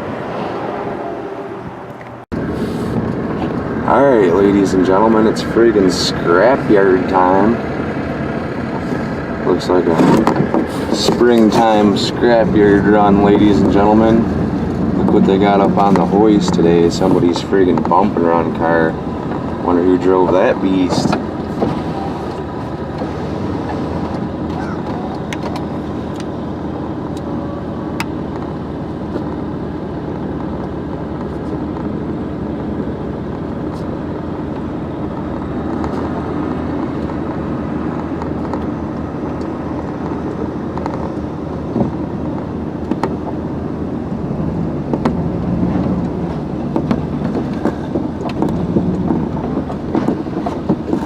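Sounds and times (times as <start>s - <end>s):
truck engine and road noise: 0.0s - 51.0s
sharp knocks and rattles: 44.8s - 51.0s.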